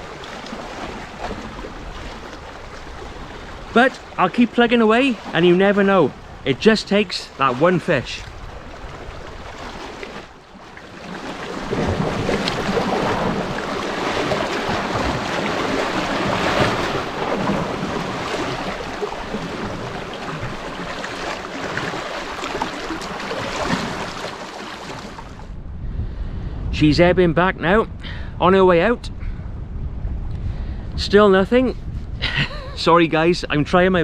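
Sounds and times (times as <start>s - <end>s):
waves at water's edge: 0.0s - 25.5s
wind buffeting microphone: 0.0s - 34.0s.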